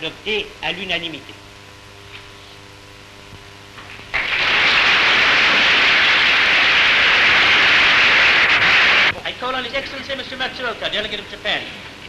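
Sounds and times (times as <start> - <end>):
crowd applauding: 4.1 - 9.1.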